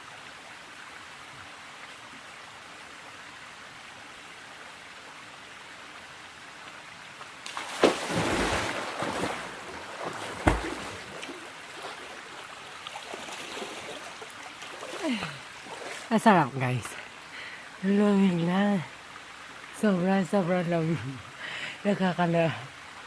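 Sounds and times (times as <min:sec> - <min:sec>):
waterfall and stream rushing: 0:00.0 - 0:23.0
splashing in water: 0:07.4 - 0:16.1
sharp thumps: 0:10.3 - 0:11.0.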